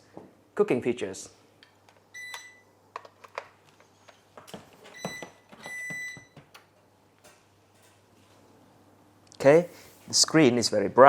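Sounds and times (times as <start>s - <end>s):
oven control panel beeps: 2.2s - 2.7s, 5.0s - 6.4s.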